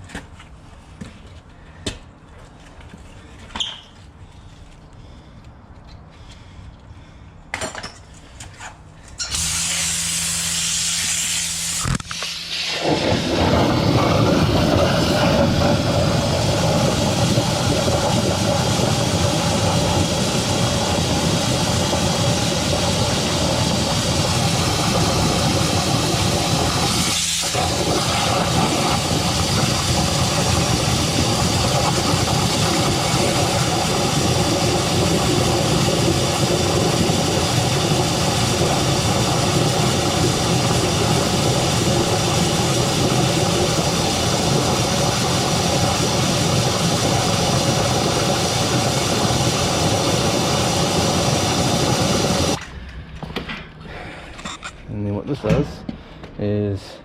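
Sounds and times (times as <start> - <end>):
drain jetter engine running: 12.7 - 52.6.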